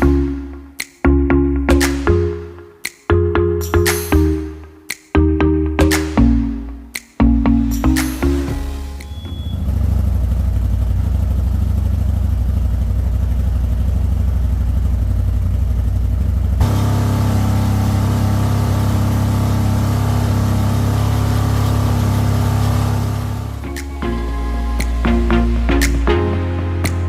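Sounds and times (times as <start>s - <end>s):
engine idling through exhaust: 9.5s - 23.6s.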